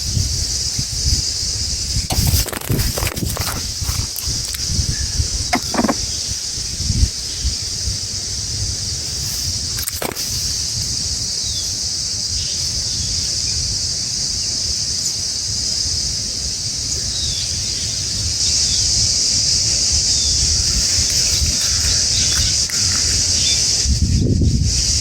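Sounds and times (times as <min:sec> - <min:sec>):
high-pitched hiss: 0:00.0 - 0:25.0.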